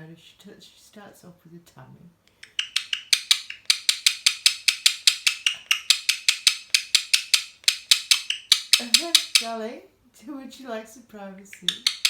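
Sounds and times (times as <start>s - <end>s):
parrot beak clicking: 2.4s - 9.6s, 11.5s - 12.0s.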